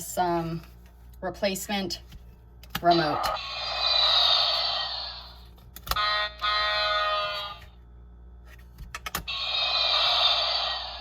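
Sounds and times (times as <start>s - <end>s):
electronic hissing sound: 3.4s - 5.4s, 9.3s - 11.0s.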